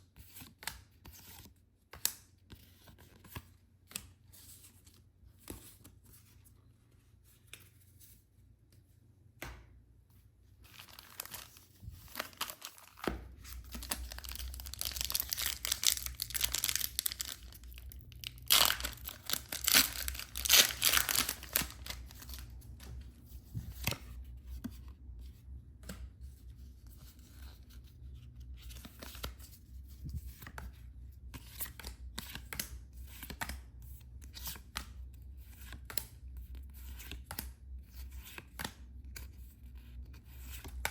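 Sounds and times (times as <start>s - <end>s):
plastic packaging tearing: 10.7s - 22.4s
packaging crinkling and rustling: 10.7s - 22.6s.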